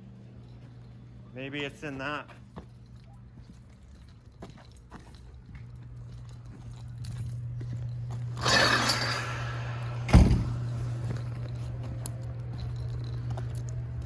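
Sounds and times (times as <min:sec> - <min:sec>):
steady low hum: 0:00.0 - 0:14.0
heavy thump: 0:10.1 - 0:10.7.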